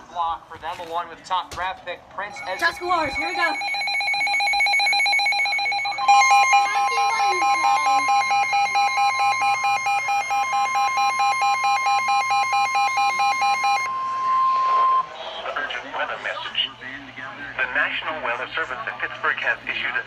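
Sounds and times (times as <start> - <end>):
steady warning tone: 2.2 - 18.1
rapidly pulsing alarm beep: 2.3 - 16.0.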